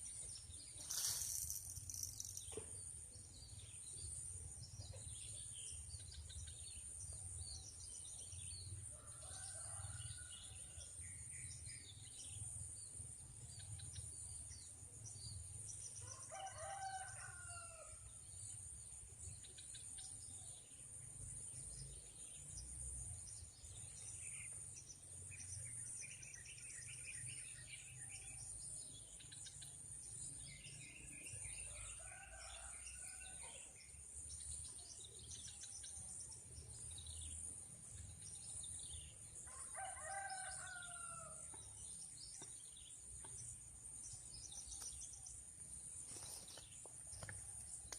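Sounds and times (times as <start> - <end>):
rooster crowing: 39.7 - 41.4.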